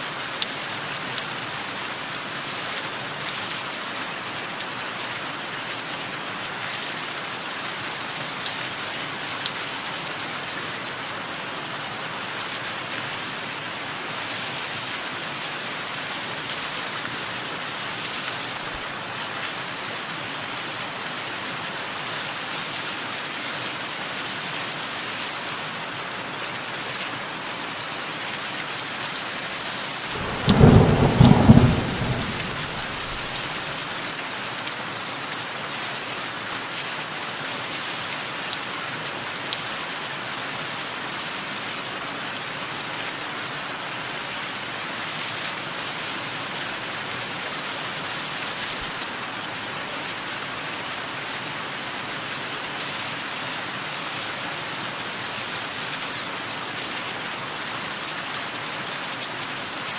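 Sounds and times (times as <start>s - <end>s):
steady rain: 0.0s - 59.9s
thunder clap rumbling: 30.1s - 33.7s.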